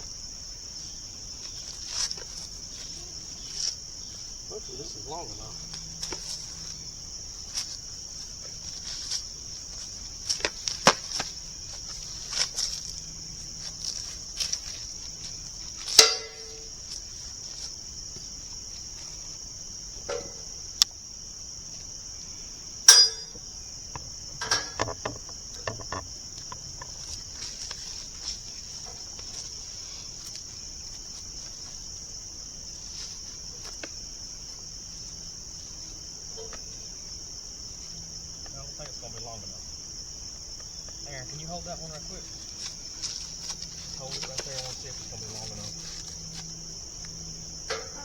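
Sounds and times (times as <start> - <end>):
high-pitched insect chorus: 0.0 - 48.0
knocks and clanks: 15.9 - 16.6, 22.9 - 27.0, 47.6 - 48.0.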